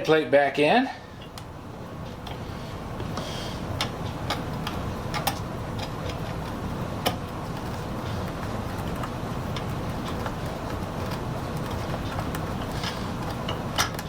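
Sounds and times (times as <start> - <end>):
steady low hum: 0.0 - 14.0
clicks and taps of metal parts: 3.8 - 6.2.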